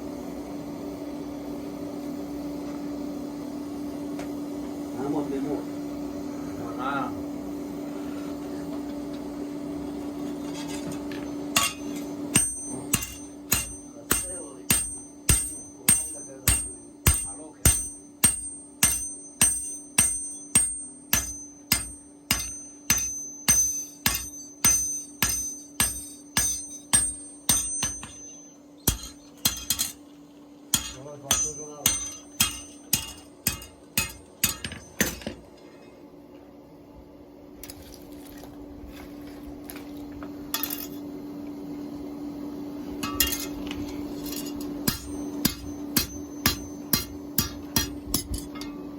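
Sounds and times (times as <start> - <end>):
steady hum: 0.0 - 48.9
hammer striking metal on anvil: 10.8 - 30.0, 30.7 - 35.4, 43.0 - 48.9.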